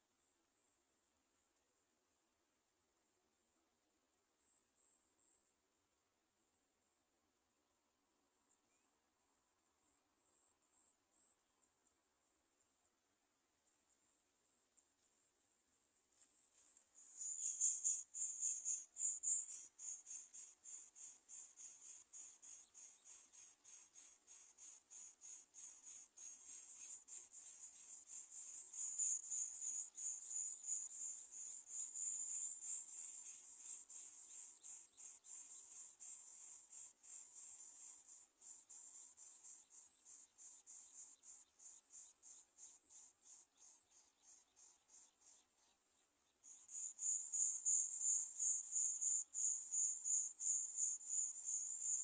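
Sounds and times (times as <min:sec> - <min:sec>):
insect chirping: 0:17.0 - 0:52.0.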